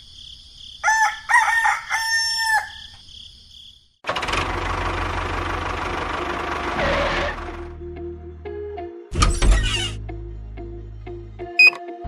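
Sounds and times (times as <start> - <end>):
rooster crowing: 0.8 - 3.0.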